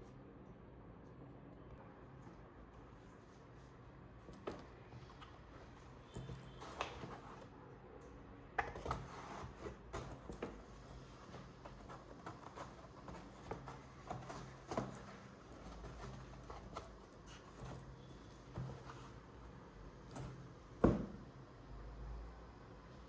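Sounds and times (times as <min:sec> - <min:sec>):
packaging rustling and tapping: 0:08.6 - 0:19.1.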